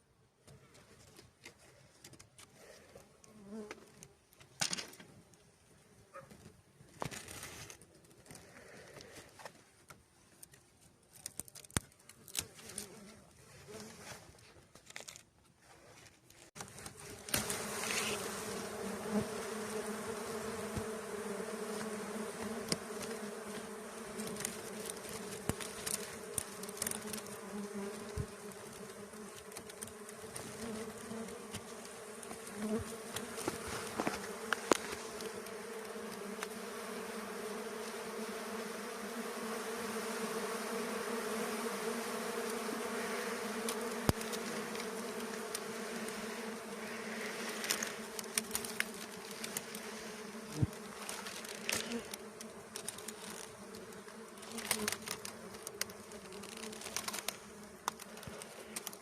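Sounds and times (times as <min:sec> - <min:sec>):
bees buzzing: 0:16.7 - 0:59.0.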